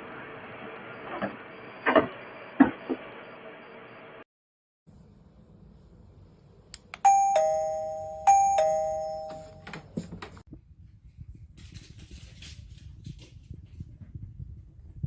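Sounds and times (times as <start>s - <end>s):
doorbell ding-dong chime: 7.0s - 9.9s.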